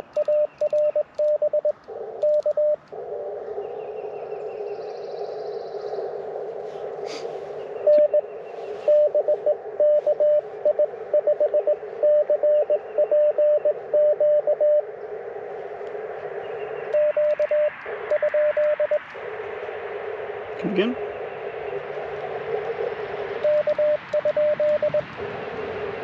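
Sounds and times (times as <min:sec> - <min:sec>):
morse code tone: 0:00.0 - 0:02.8, 0:07.8 - 0:14.8, 0:16.9 - 0:19.1, 0:23.4 - 0:25.1
receiver hiss: 0:00.0 - 0:26.0.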